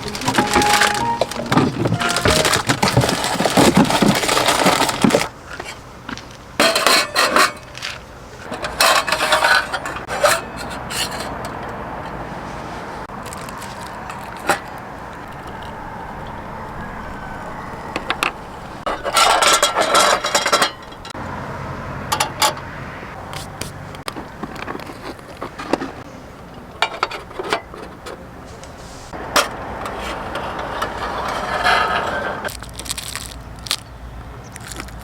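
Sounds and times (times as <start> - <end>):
dense clatter: 0.0 - 5.3
objects being handled: 0.0 - 5.3.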